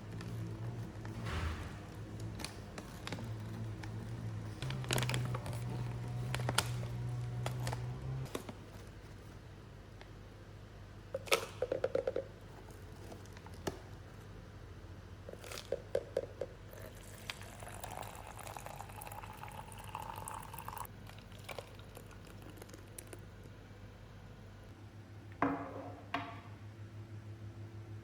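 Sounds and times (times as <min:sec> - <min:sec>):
liquid pouring into container: 0:16.6 - 0:23.2.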